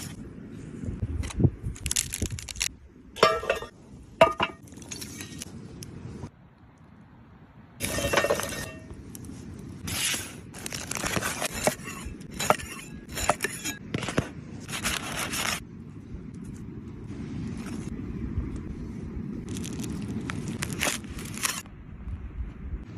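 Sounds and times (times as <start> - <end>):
cookware and utensils clinking: 3.2 - 4.6.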